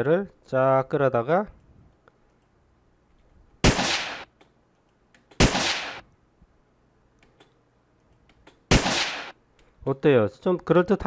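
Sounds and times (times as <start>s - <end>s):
gunshot cracks: 3.6s - 4.3s, 5.4s - 6.0s, 8.7s - 9.4s.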